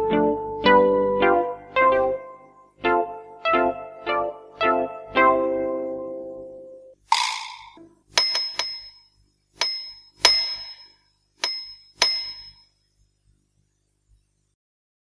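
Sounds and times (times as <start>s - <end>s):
bright bell-like dings: 7.2s - 12.8s.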